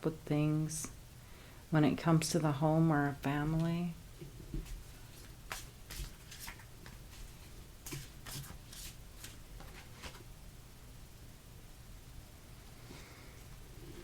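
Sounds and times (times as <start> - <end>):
cards swishing and tapping: 4.6 - 10.2.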